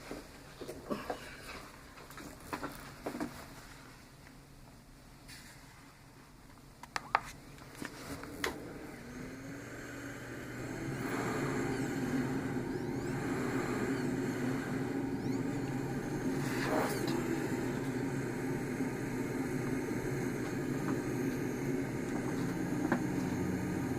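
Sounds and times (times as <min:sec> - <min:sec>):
blower rush of air: 0:07.4 - 0:23.9.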